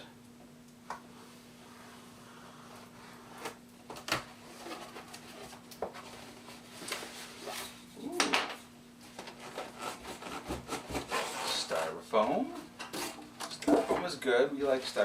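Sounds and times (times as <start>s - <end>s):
knife cutting cardboard box: 9.4s - 11.8s.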